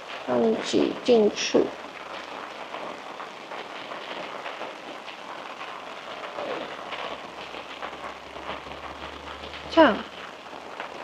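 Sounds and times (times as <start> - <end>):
steady rain pattering: 0.0 - 11.0.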